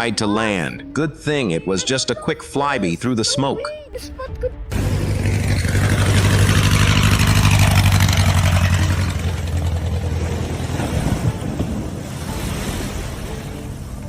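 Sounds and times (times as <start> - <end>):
engine humming: 4.1 - 14.0.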